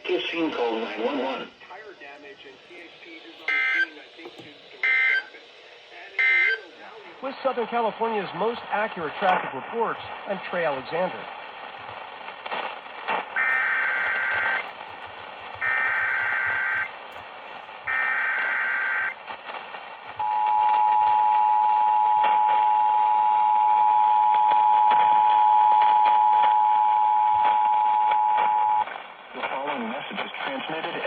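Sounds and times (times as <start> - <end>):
radio hiss: 0.0 - 21.0, 27.4 - 31.0
two-tone attention signal: 3.5 - 3.9, 6.2 - 6.6
buzzy digital data bursts: 13.2 - 14.8, 15.5 - 16.9, 17.8 - 19.2.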